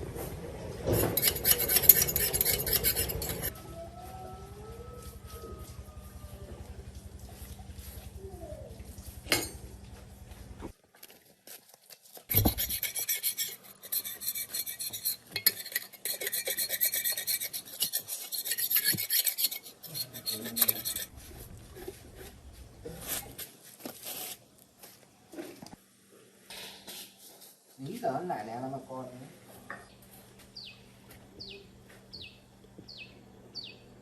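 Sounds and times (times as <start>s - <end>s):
low machine hum: 0.0s - 10.7s, 19.9s - 23.4s
hand file rasping on metal: 0.9s - 3.5s, 12.3s - 21.2s.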